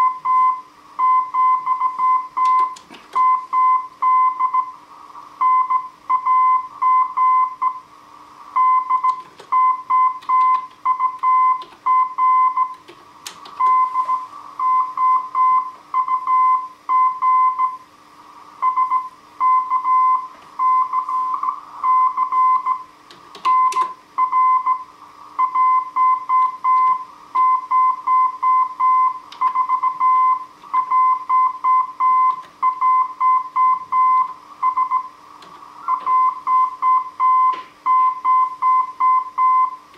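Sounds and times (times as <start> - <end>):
faint steady hum: 0.0 - 39.9
morse code tone: 8.6 - 12.8, 13.6 - 17.8, 18.6 - 22.9, 23.5 - 35.1, 35.8 - 39.8.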